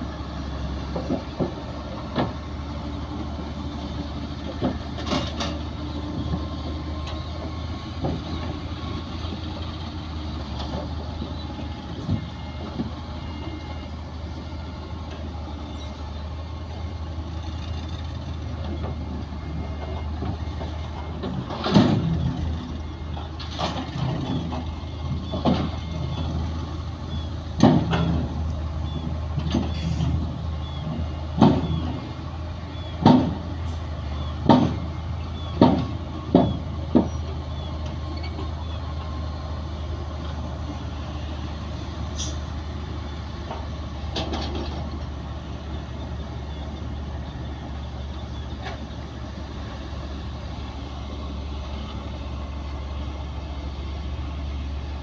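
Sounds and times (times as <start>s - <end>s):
bulldozer diesel engine running: 0.0s - 55.0s
metallic clanks of tracks: 4.4s - 8.6s, 27.1s - 39.1s, 43.4s - 49.8s.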